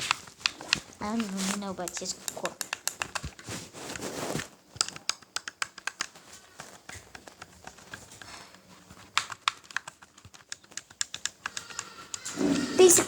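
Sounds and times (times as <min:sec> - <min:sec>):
game controller buttons clicking: 0:00.0 - 0:03.4, 0:04.7 - 0:08.3, 0:09.0 - 0:12.3.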